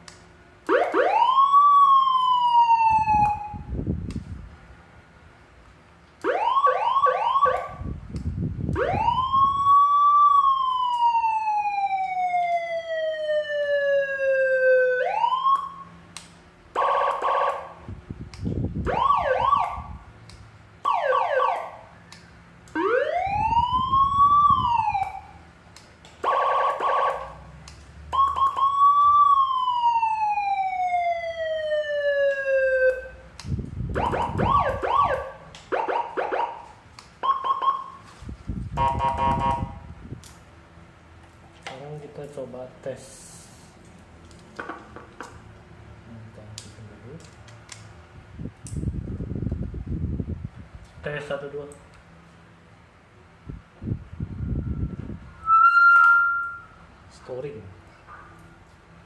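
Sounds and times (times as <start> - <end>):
electronic siren wailing and yelping: 0.7 - 3.8, 6.2 - 8.0, 8.8 - 16.0, 16.8 - 17.8, 18.8 - 20.0, 20.8 - 21.9, 22.7 - 25.4, 26.2 - 27.5, 28.1 - 33.2, 33.9 - 38.0, 38.8 - 39.8, 54.5 - 56.8.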